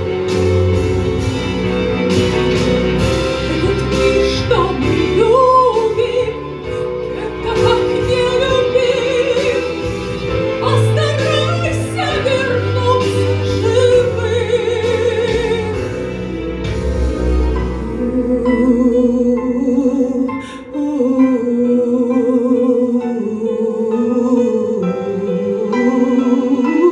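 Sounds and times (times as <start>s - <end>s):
sustained low bass notes: 0.0s - 20.9s
instrumental accompaniment: 0.0s - 26.9s
woman singing with vibrato: 3.1s - 16.4s, 17.6s - 26.9s.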